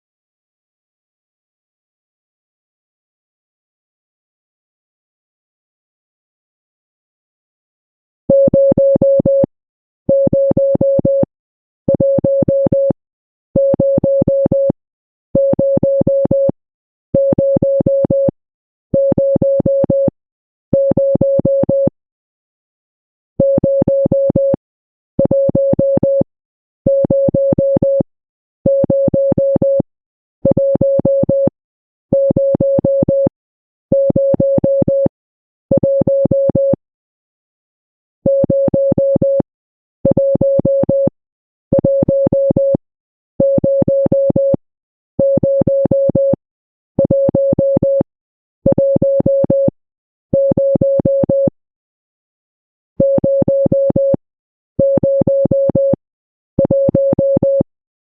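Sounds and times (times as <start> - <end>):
morse code electronic tone: 23.4 - 24.6, 34.0 - 35.1, 43.5 - 44.6, 50.4 - 51.5, 53.0 - 54.2, 56.6 - 57.7.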